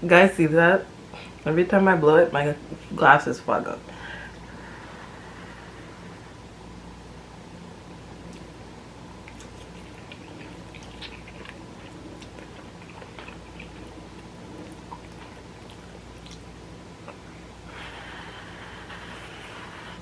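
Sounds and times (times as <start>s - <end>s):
steady low hum: 0.0s - 20.0s
person chewing noodles: 8.2s - 18.0s.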